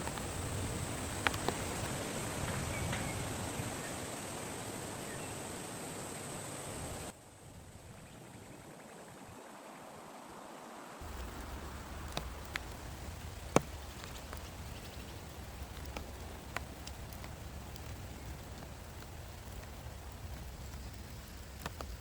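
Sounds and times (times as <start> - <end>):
heavy raindrops tapping: 0.0 - 1.9, 11.0 - 22.0
rain falling: 0.0 - 6.0, 10.3 - 22.0.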